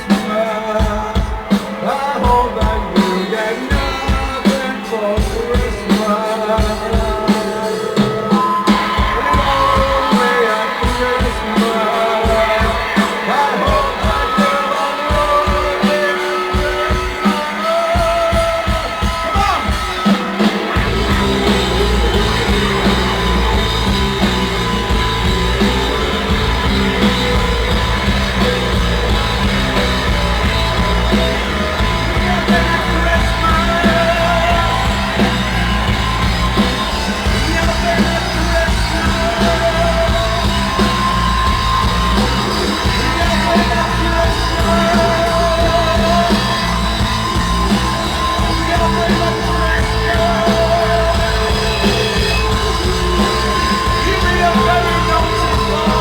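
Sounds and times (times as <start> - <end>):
live rock band playing: 0.0 - 56.0
person singing: 0.0 - 56.0
heavy bass drone: 20.8 - 56.0.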